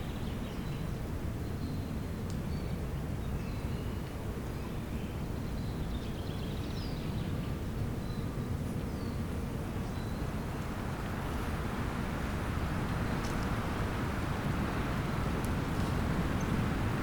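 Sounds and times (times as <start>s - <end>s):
birdsong chirps: 0.0s - 17.0s
steady low rumble: 10.1s - 17.0s.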